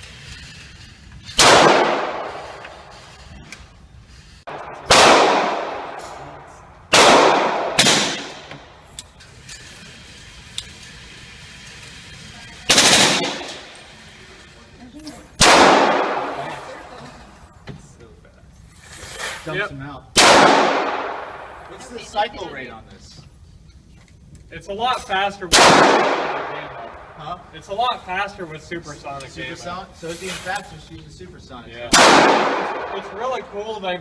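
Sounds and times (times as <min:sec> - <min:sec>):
echoing gunshots: 0:01.4 - 0:03.1, 0:04.5 - 0:08.8, 0:12.7 - 0:13.8, 0:15.4 - 0:16.7, 0:20.1 - 0:21.7, 0:25.5 - 0:27.3, 0:31.9 - 0:33.6.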